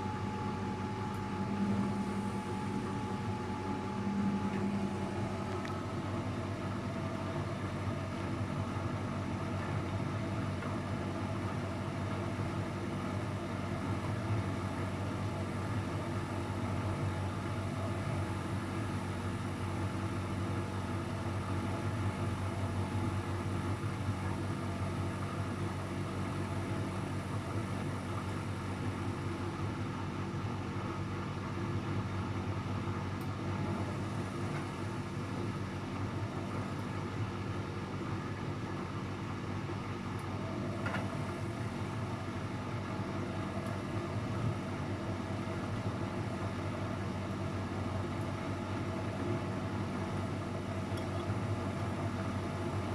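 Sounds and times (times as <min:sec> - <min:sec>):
steady tone: 0:00.0 - 0:06.6
washing machine humming: 0:00.0 - 0:52.9.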